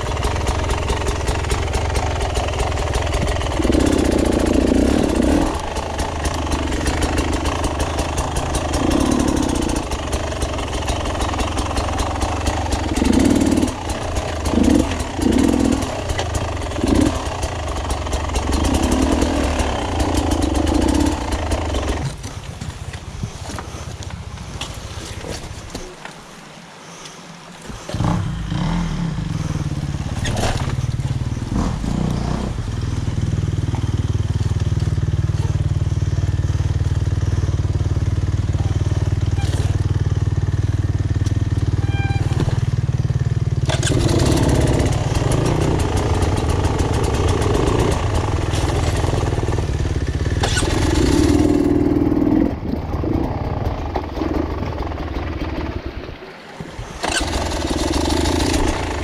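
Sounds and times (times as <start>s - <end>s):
rough rushing noise: 0.0s - 22.4s, 41.7s - 59.0s
off-road motorcycle engine: 0.0s - 26.8s, 27.7s - 59.0s.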